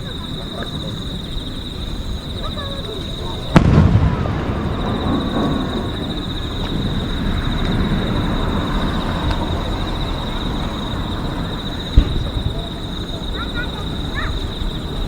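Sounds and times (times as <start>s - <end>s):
high-pitched insect trill: 0.0s - 15.0s
low rumble of car noise: 0.0s - 15.0s
firework boom: 3.4s - 8.8s, 11.9s - 12.8s.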